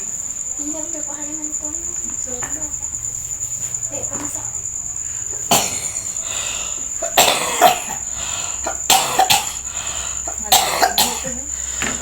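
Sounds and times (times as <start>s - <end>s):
elderly man coughing hard: 5.5s - 12.0s.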